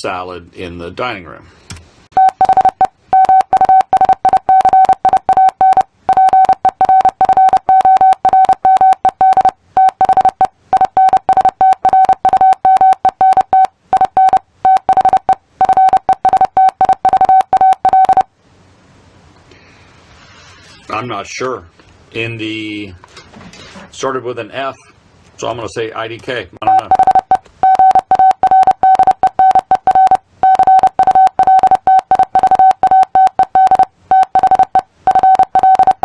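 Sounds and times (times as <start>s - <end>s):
morse code tone: 2.2s - 18.3s, 26.6s - 36.0s.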